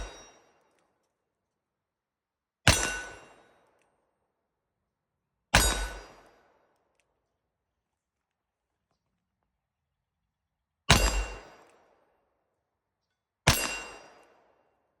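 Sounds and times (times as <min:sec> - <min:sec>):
metallic ring of steel target: 0:00.0 - 0:00.4, 0:02.7 - 0:03.3, 0:05.6 - 0:06.0, 0:10.9 - 0:11.4, 0:13.5 - 0:14.0.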